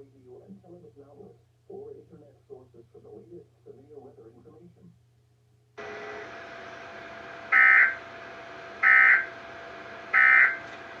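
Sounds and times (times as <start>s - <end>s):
steady radio hiss: 0.0s - 6.8s, 7.5s - 8.1s
digital data bursts: 10.2s - 10.6s.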